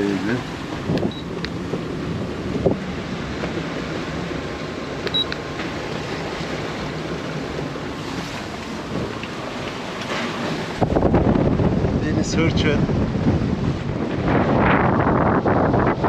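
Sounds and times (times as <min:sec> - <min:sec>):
wind noise: 0:00.0 - 0:05.3, 0:10.1 - 0:16.0
waves breaking around a hull: 0:00.0 - 0:16.0.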